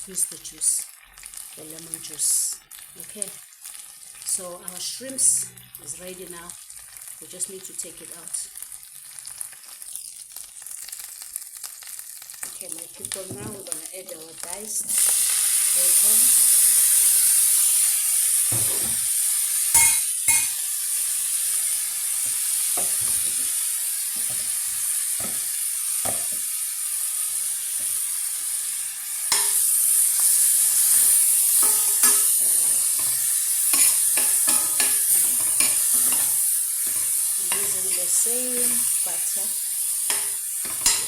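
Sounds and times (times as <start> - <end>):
bacon sizzling in a frying pan: 0.0 - 41.0
utensil scraping in a pan: 29.2 - 39.4, 40.0 - 41.0.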